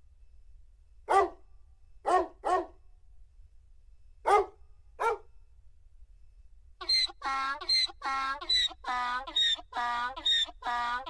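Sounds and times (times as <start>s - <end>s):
keyboard dog bark effect: 1.1s - 1.4s, 2.1s - 2.7s, 4.3s - 5.2s.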